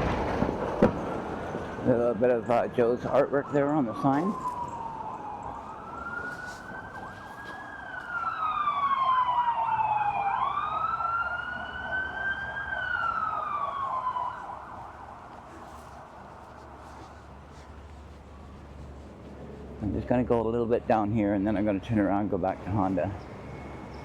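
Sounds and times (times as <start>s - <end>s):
siren wailing: 0.0s - 19.0s, 22.6s - 24.0s
siren fast warble: 2.5s - 16.0s.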